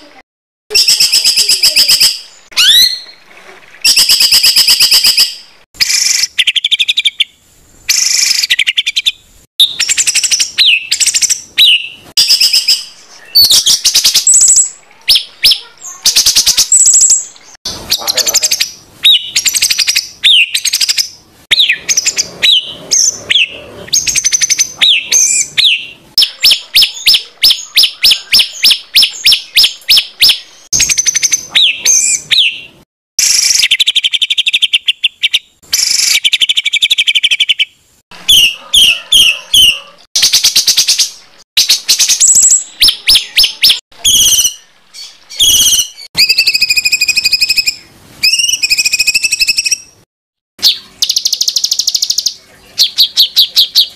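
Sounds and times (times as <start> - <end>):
songbird whistled notes: 0.7 - 3.2, 41.6 - 49.9
harsh rasping bird calls: 0.7 - 50.0.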